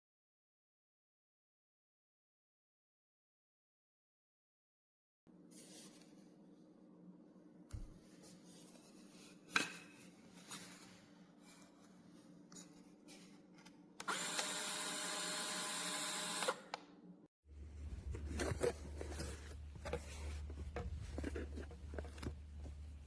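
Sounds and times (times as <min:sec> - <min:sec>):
coffee grinder motor running: 0:14.0 - 0:16.8.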